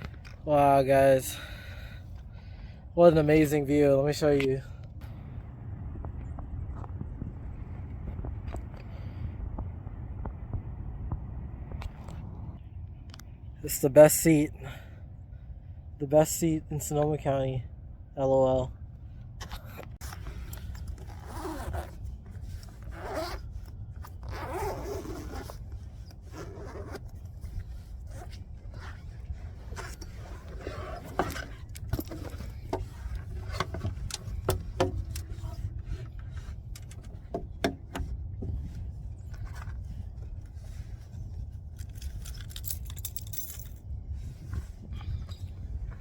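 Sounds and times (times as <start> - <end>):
low rumble: 4.7 - 13.6
zipper being pulled open: 19.4 - 33.7.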